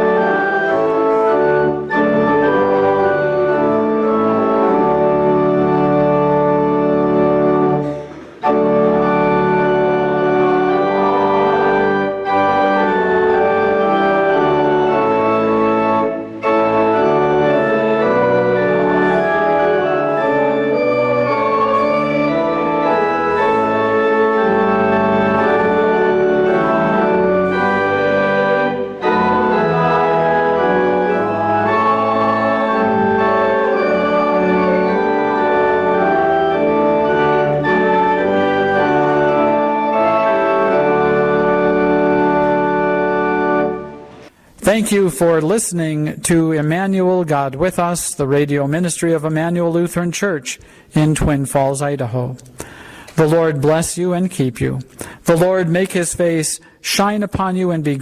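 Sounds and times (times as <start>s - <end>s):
church organ chords: 0.0s - 51.8s.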